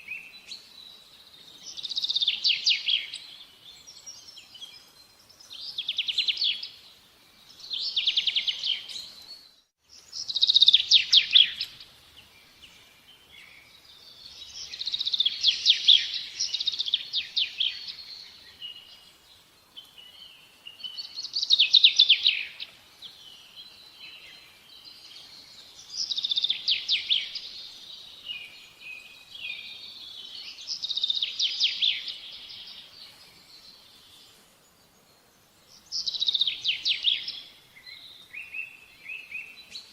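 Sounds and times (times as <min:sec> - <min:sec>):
bird song: 0:00.0 - 0:39.9.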